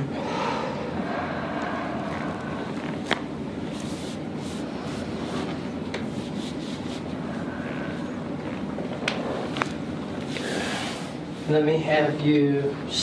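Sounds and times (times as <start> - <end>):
soft rubbing: 1.1 - 8.6.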